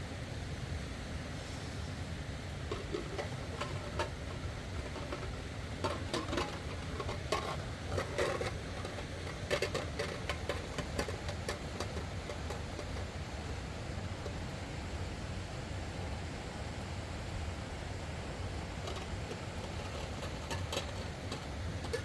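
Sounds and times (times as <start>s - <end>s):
small clicks taps and scrapes: 2.7s - 13.4s, 18.7s - 22.0s.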